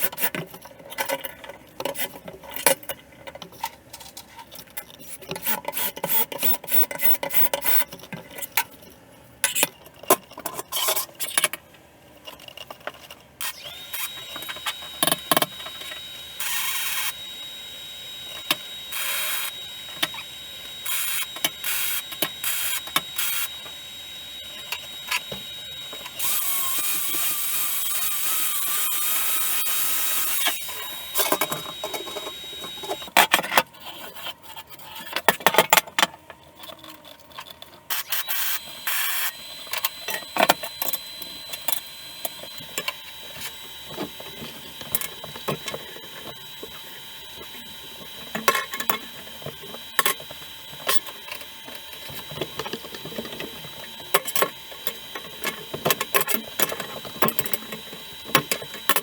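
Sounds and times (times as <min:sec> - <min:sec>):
power tool running: 0:05.4 - 0:07.8, 0:13.4 - 0:33.1, 0:37.9 - 0:59.0
thin steady high whine: 0:13.4 - 0:33.2, 0:36.6 - 0:59.0.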